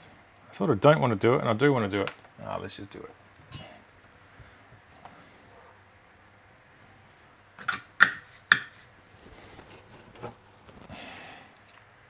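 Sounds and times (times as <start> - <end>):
hard objects clattering on workbench: 7.6 - 10.4.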